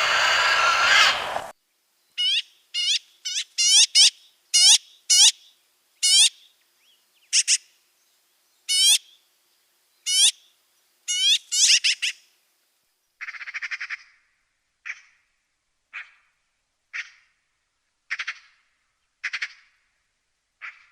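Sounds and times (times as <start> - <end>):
magpie calling: 0.0 - 1.5.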